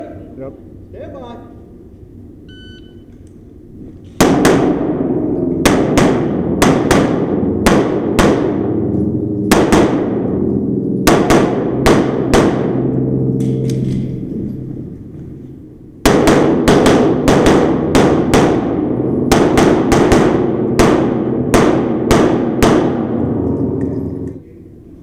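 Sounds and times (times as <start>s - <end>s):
shot timer beep: 2.5s - 3.1s
pistol shots echoing: 4.2s - 14.1s, 16.0s - 24.2s.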